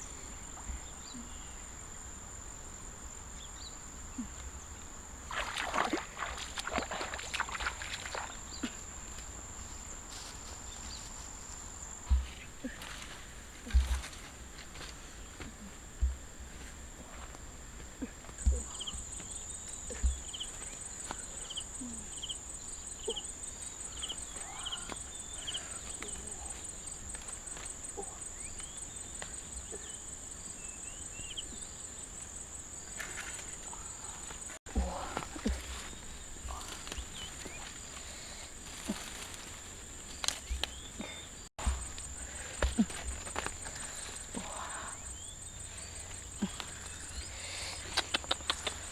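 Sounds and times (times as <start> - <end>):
insects droning: 0.0 - 48.9
dull low thumps: 41.6 - 43.2.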